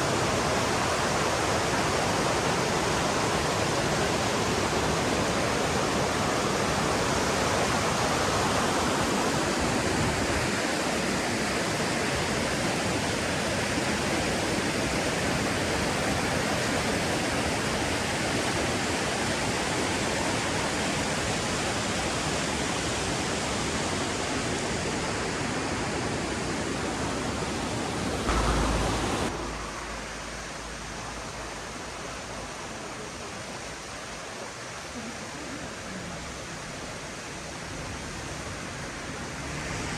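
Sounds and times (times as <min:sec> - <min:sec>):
mountain stream rushing: 0:00.0 - 0:39.9
low thud: 0:28.2 - 0:31.5.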